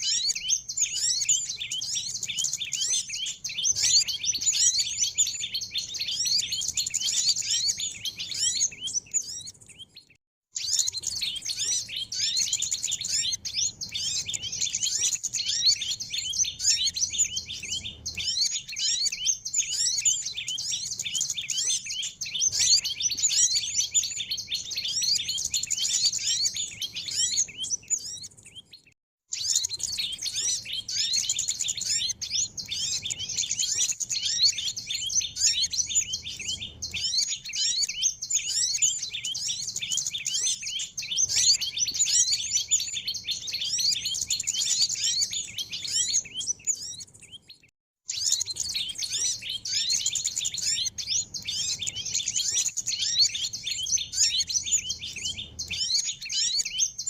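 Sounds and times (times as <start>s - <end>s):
songbirds chirping and twittering: 0.0s - 57.0s.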